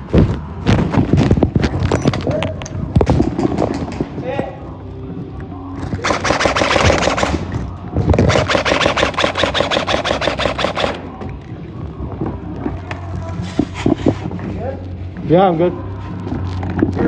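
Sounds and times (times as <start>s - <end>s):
airsoft gun firing full auto: 6.0s - 7.5s, 8.2s - 11.1s.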